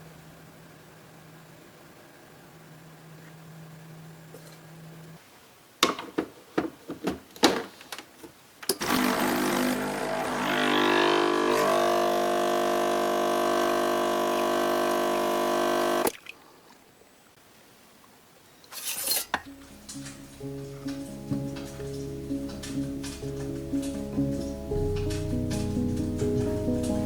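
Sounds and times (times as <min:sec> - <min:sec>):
kitchen appliance motor hum: 0:08.8 - 0:16.1.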